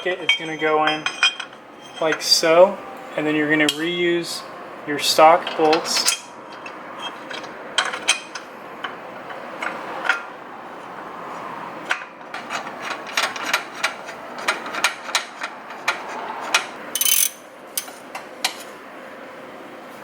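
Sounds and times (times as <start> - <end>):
ratchet wrench clicking: 15.9 - 18.0.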